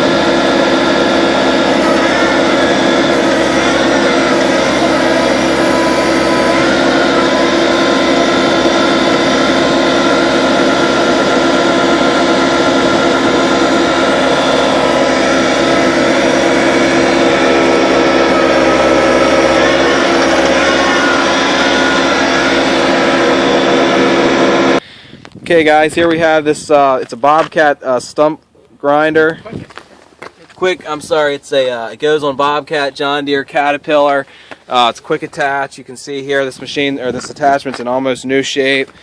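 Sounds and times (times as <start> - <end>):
diesel engine running: 0.0 - 24.8.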